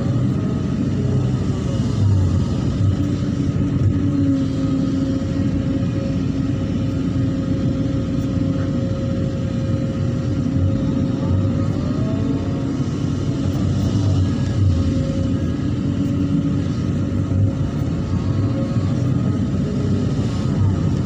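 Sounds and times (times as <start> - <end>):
diesel engine rumbling: 0.0 - 21.0.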